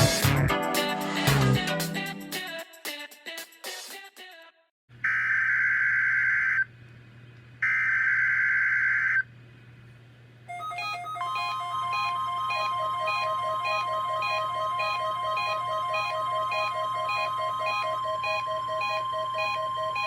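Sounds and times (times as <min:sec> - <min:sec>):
digital data tones screeching: 0:10.5 - 0:20.0
electronic note pattern: 0:10.5 - 0:20.0
steady electronic tone: 0:10.5 - 0:20.0.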